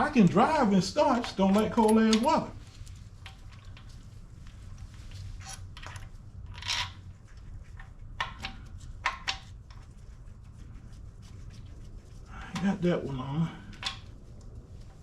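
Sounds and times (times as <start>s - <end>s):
low steady hum: 0.0s - 15.0s
hand tools clicking: 1.1s - 2.5s.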